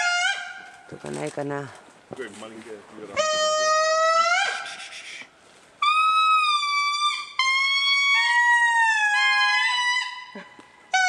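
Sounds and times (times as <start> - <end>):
lemurs wailing song: 5.8 - 11.0.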